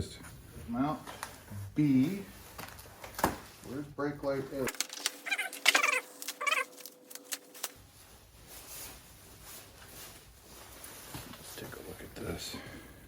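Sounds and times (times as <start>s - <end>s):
cat meowing: 5.3s - 6.7s.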